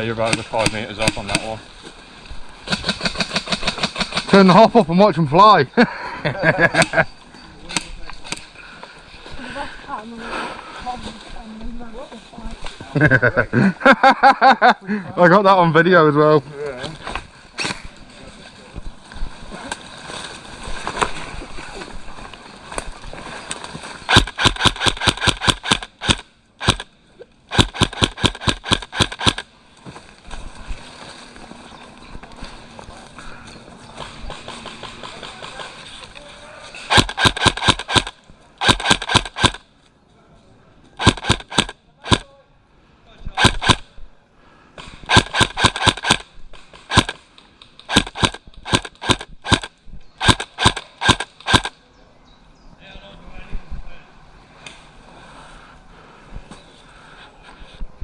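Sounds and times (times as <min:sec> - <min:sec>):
airsoft rifle shots: 0:00.0 - 0:01.6, 0:02.7 - 0:04.7, 0:24.1 - 0:26.9, 0:27.5 - 0:29.5, 0:34.0 - 0:35.9, 0:36.9 - 0:39.7, 0:41.0 - 0:42.3, 0:43.3 - 0:44.0, 0:44.8 - 0:51.7.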